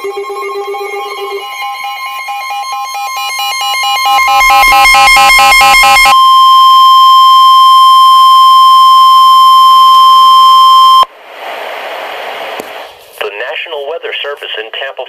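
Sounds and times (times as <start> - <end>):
fast two-tone beeping: 0.0 - 11.1
steady alarm tone: 0.0 - 11.1.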